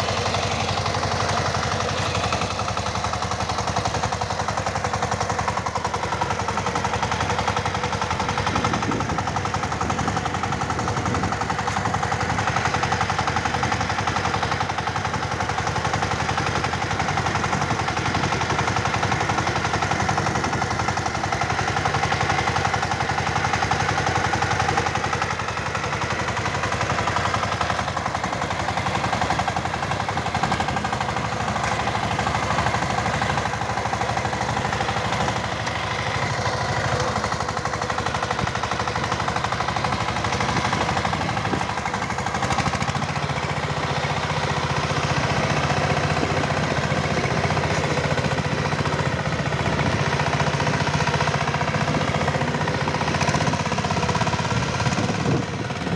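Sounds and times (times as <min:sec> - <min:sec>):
power tiller engine knocking: 0:00.0 - 0:55.9.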